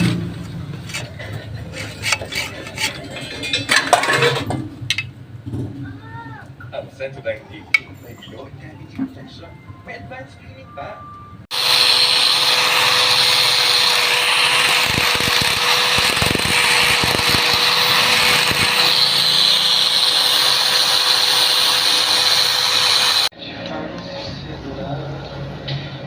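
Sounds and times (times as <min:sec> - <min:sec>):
power tool whirring: 0:11.5 - 0:23.3.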